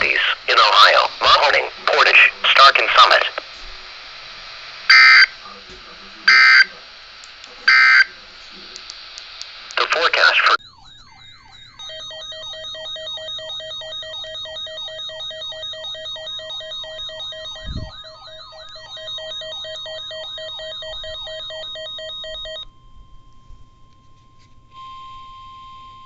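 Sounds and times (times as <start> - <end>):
steady warning alarm tone: 4.8 - 6.8, 7.5 - 8.6, 9.7 - 26.0
electronic alarms warbling: 4.9 - 5.4, 6.3 - 6.7, 7.7 - 8.1, 10.6 - 22.7
pulsing beeps: 9.8 - 22.7.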